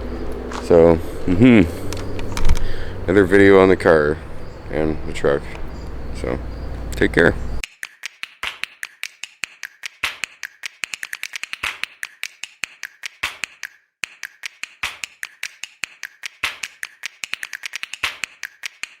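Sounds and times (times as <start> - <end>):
rapid tapping clicks: 0.0 - 19.0.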